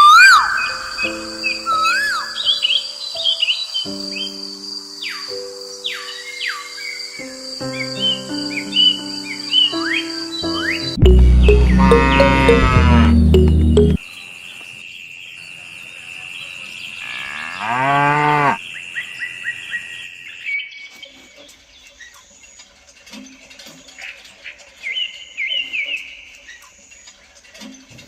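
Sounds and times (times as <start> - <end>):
steady high tone: 10.6 - 14.0
cow mooing: 11.8 - 13.3, 17.0 - 18.6.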